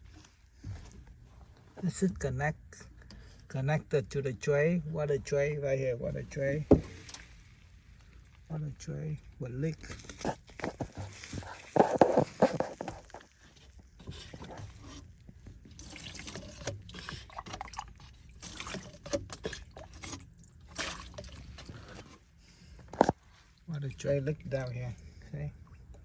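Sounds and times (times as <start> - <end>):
water trickling and dripping: 15.6 - 22.0.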